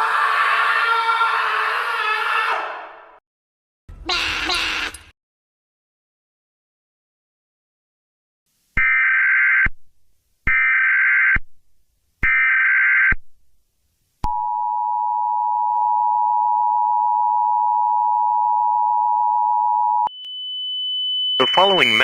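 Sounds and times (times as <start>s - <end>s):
steady two-tone attention signal: 21.4s - 22.0s.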